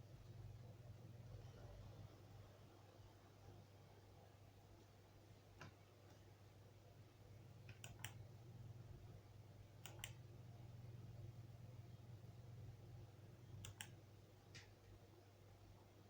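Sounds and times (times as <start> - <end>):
low steady hum: 0.0 - 16.0
faint clicks: 7.6 - 8.2, 9.8 - 10.2, 13.5 - 15.0.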